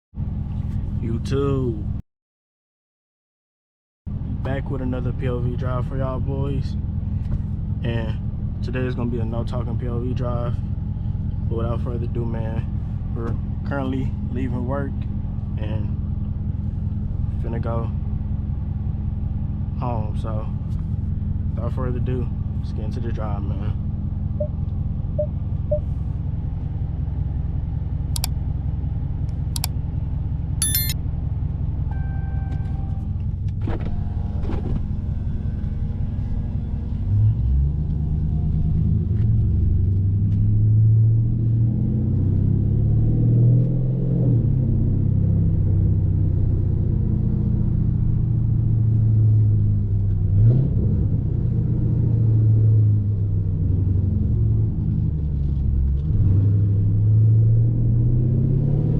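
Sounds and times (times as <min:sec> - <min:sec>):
car engine idling and accelerating: 0:00.2 - 0:02.0, 0:04.1 - 0:58.9
sharp clicks: 0:30.6 - 0:31.0
short tone: 0:30.6 - 0:31.0, 0:31.9 - 0:33.1.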